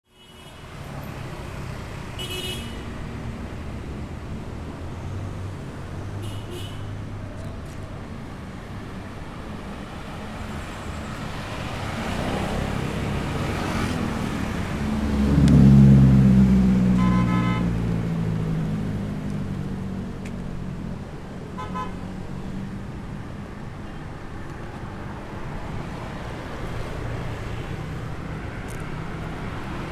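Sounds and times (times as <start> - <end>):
street traffic rumble: 0.0 - 29.9
vehicle passing close: 10.8 - 20.0.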